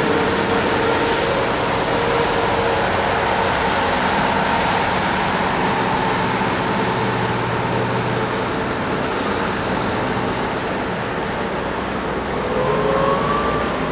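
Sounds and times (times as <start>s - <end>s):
harvesting machinery diesel engines: 0.0s - 13.9s.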